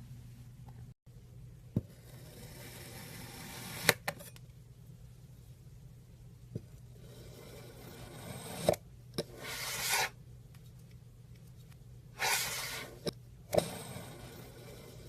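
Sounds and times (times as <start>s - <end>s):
tool scraping sand: 7.2s - 10.2s, 12.2s - 15.0s.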